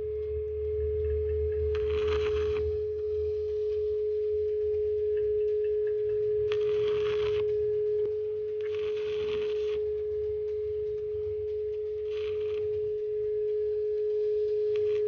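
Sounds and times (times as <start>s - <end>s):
steady high hum: 0.0s - 15.0s
welding arc crackle: 1.7s - 2.7s, 6.5s - 7.4s, 8.6s - 9.8s, 12.0s - 12.8s, 14.7s - 15.0s.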